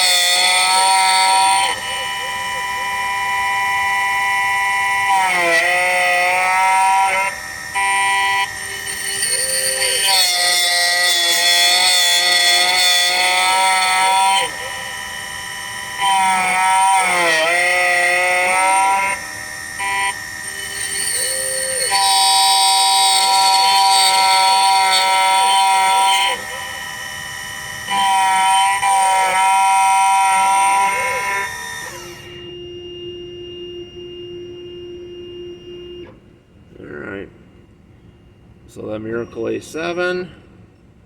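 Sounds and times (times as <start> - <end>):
key-cutting machine whine: 0.0 - 37.0
faint steady hum: 30.2 - 41.0.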